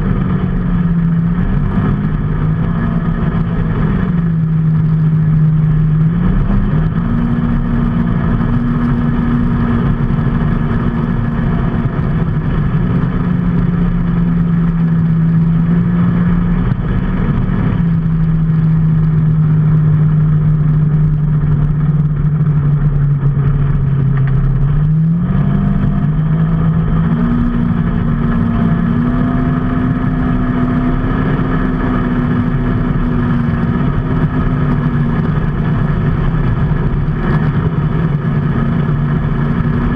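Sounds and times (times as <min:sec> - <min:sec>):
road and wind noise: 0:00.0 - 0:39.9
vehicle engine running: 0:00.0 - 0:39.9.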